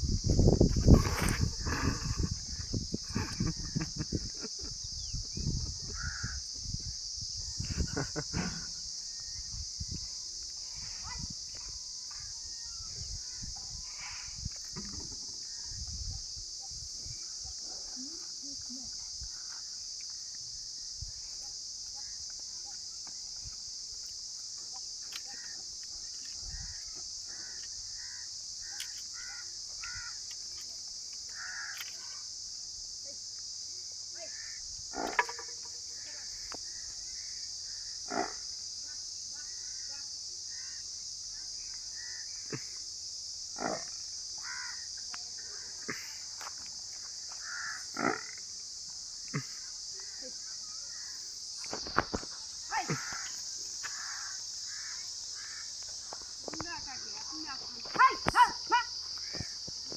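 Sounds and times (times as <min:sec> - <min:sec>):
high-pitched insect drone: 0:00.0 - 0:59.9
crows cawing: 0:06.0 - 0:06.4, 0:27.5 - 0:30.2, 0:31.3 - 0:31.9, 0:44.4 - 0:44.8, 0:47.4 - 0:47.9, 0:52.8 - 0:55.8.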